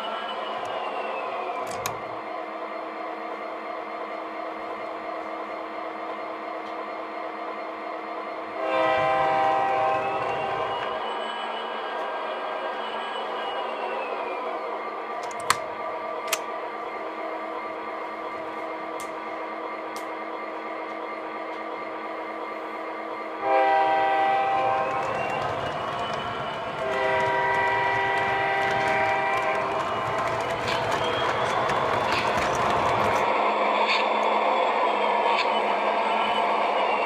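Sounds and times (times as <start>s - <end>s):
locomotive air horn blasts: 8.6s - 10.7s, 23.4s - 25.1s, 26.8s - 29.8s.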